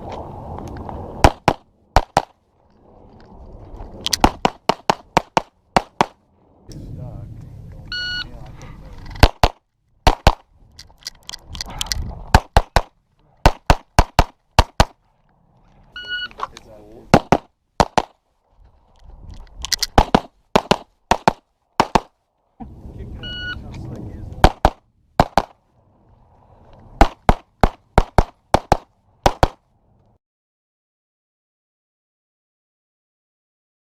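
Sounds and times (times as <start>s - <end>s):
pistol shots: 9.2s - 10.4s, 12.3s - 15.0s, 17.1s - 18.2s, 19.8s - 22.2s, 24.4s - 25.6s, 27.0s - 29.6s.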